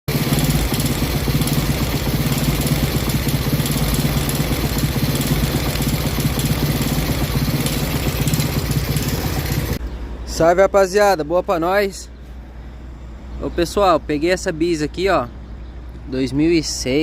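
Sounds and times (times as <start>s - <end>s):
motorcycle engine idling: 0.1s - 9.9s.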